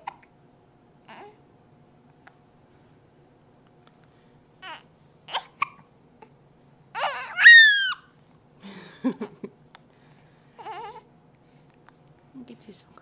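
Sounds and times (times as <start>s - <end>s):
high squealing cry: 7.0s - 8.1s.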